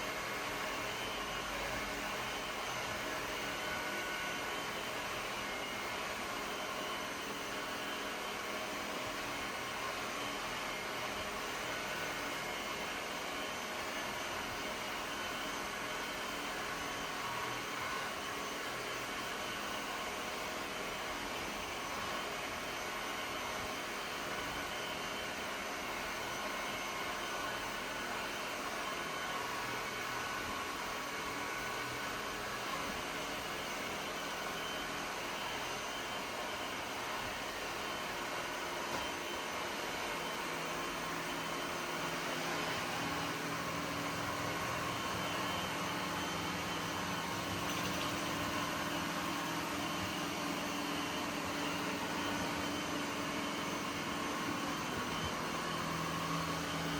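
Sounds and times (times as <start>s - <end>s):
robot vacuum whirring: 35.6s - 56.9s.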